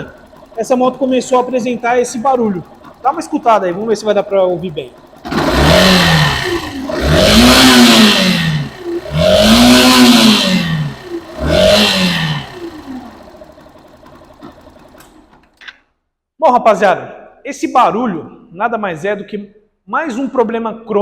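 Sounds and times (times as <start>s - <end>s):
droning engine bearing noise: 0.0s - 15.6s
motorcycle engine revving: 0.0s - 15.6s.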